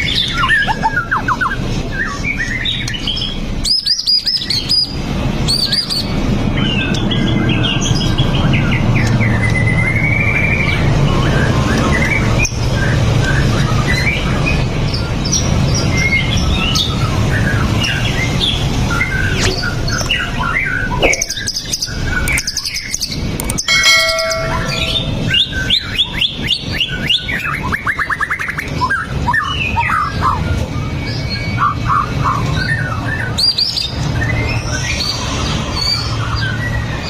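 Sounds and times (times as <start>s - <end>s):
birds singing whistles and trills: 0.0s - 37.0s
low steady hum: 23.7s - 25.7s.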